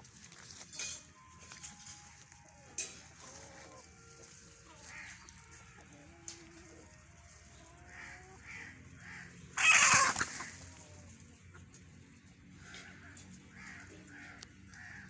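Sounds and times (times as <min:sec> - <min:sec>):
chickens clucking: 0:00.0 - 0:15.0
chicken squawk: 0:07.6 - 0:11.0.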